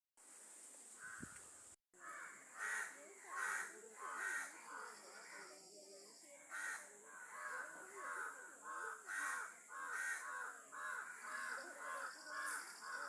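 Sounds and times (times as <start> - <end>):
birds making harsh calls: 6.5 - 13.0.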